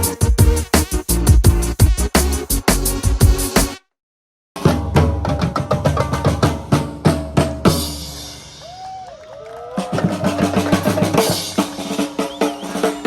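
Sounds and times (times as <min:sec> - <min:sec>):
drum-kit beat: 0:00.0 - 0:03.8, 0:09.9 - 0:13.0.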